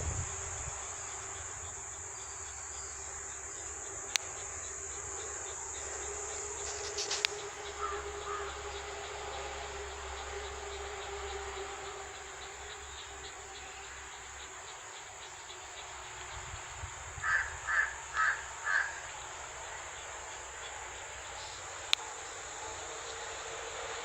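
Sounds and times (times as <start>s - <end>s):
high insect drone: 0.0s - 24.0s
crow cawing: 7.8s - 8.5s, 17.2s - 19.1s.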